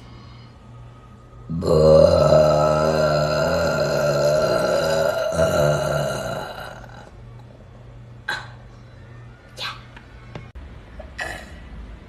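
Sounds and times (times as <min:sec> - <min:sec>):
long loud burp: 0:01.5 - 0:07.1.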